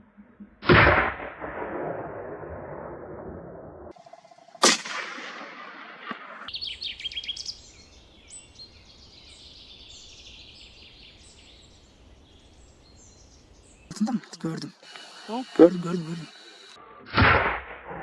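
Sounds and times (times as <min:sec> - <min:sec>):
gunshot with echo: 0:00.6 - 0:03.1, 0:04.6 - 0:06.8, 0:17.1 - 0:18.0
faint bird calls: 0:06.5 - 0:13.9
high bird chirps: 0:06.5 - 0:13.9.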